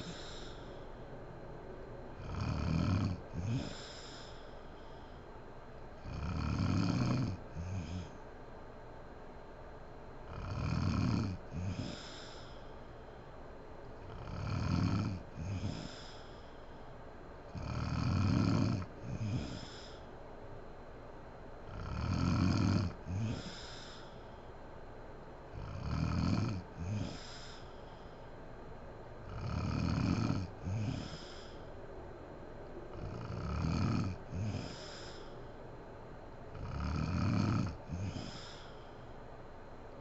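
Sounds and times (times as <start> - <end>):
woman snoring heavily: 0.0 - 0.7, 2.2 - 4.4, 6.0 - 8.2, 10.3 - 12.6, 14.1 - 16.4, 17.6 - 20.0, 21.7 - 24.2, 25.6 - 27.8, 29.3 - 31.7, 32.9 - 35.3, 36.6 - 38.8.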